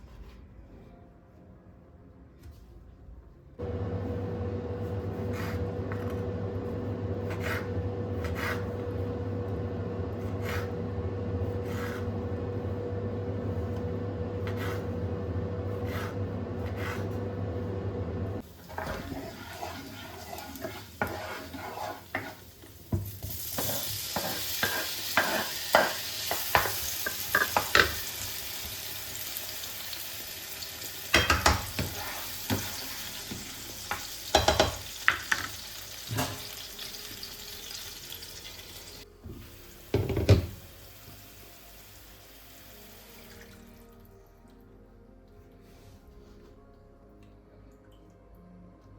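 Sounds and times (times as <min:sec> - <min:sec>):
steady machine hum: 0:03.6 - 0:18.4
food sizzling in a frying pan: 0:18.4 - 0:43.5.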